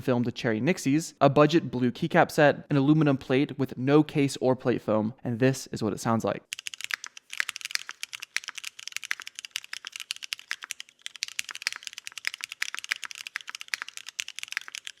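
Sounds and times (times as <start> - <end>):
fast typing on mechanical keyboard: 6.5 - 15.0.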